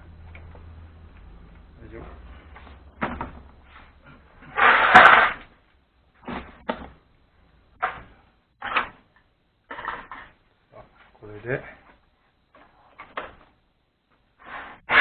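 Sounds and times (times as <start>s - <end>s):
parts and tools clattering: 9.7s - 10.4s.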